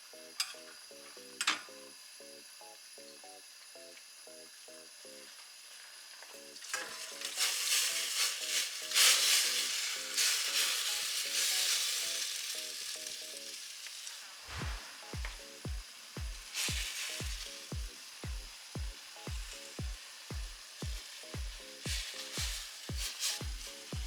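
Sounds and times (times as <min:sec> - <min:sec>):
light music with plucked notes: 0:00.0 - 0:05.4, 0:06.2 - 0:13.8, 0:14.6 - 0:24.0
tempura sizzling in oil: 0:00.0 - 0:24.0
low drum beats: 0:14.5 - 0:24.0.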